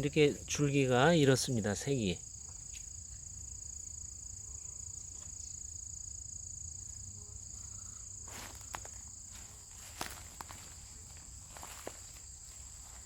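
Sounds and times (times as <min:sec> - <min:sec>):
high-pitched insect chorus: 0:00.0 - 0:13.0
footsteps: 0:08.3 - 0:13.0.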